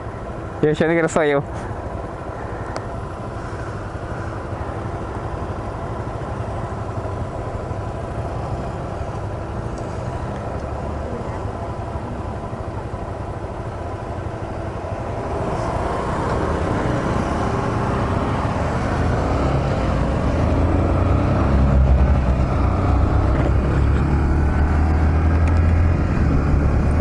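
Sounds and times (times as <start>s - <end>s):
wind and road noise: 0.0s - 27.0s.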